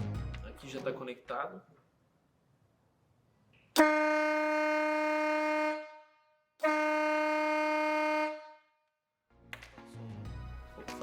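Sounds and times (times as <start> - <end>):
air horn blasts: 3.8 - 8.8.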